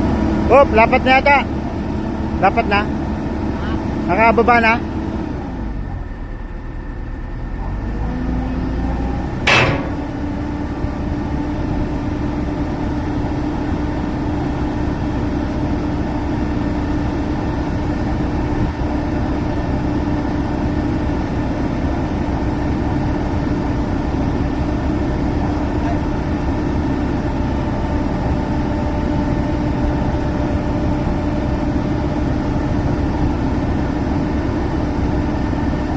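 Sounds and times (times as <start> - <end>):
diesel engine running: 0.0 - 35.9
sharp knock: 9.5 - 10.4.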